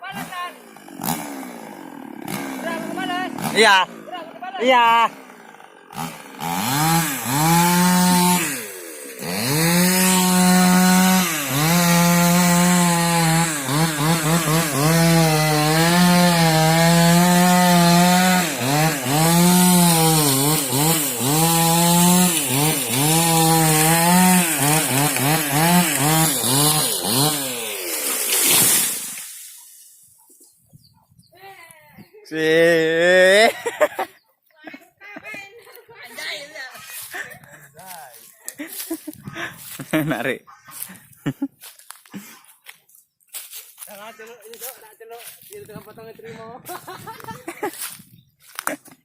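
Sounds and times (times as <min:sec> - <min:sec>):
chainsaw cutting wood: 0:00.0 - 0:30.0, 0:37.0 - 0:39.9.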